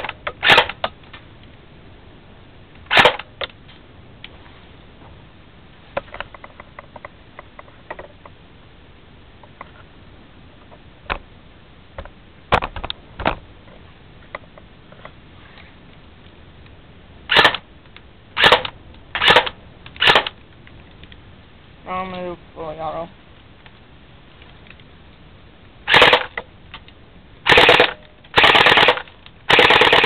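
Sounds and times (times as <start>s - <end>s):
airsoft rifle shots: 0.0s - 0.9s, 2.9s - 3.3s, 17.3s - 17.6s, 18.4s - 20.4s, 25.9s - 26.4s, 27.4s - 30.0s.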